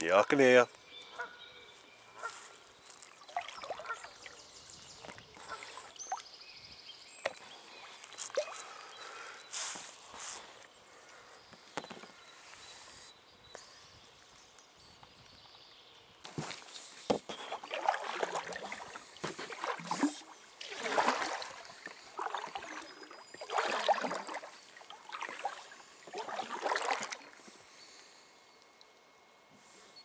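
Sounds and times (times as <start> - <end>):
kayak paddle splashing in water: 17.2 - 27.4.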